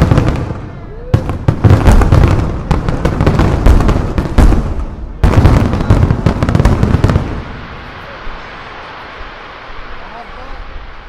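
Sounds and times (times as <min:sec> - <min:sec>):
fireworks bursting: 0:00.0 - 0:11.0.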